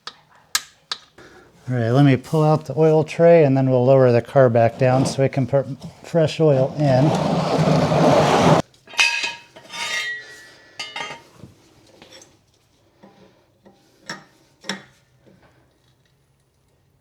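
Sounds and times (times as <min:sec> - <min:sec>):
metal clattering and scraping: 0:04.3 - 0:08.6.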